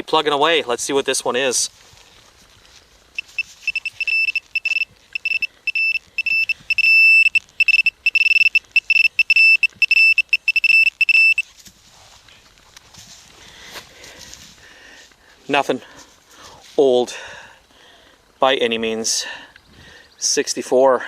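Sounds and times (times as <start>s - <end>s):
metal detector pinpointer beeping: 3.2s - 11.5s.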